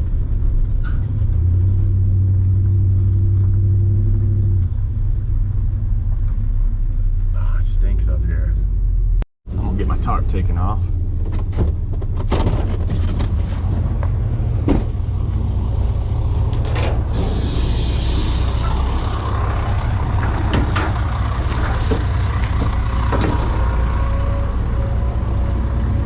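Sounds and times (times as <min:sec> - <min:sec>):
truck engine idling: 0:13.4 - 0:26.0
air hiss: 0:17.2 - 0:18.7
engine knocks: 0:18.6 - 0:24.0.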